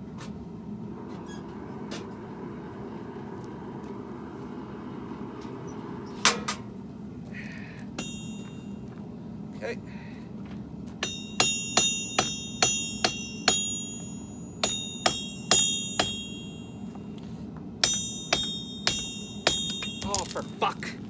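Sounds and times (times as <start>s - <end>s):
steady low hum: 0.0s - 21.0s
hammer striking steel on anvil: 8.0s - 8.6s, 11.0s - 16.7s, 17.8s - 20.6s.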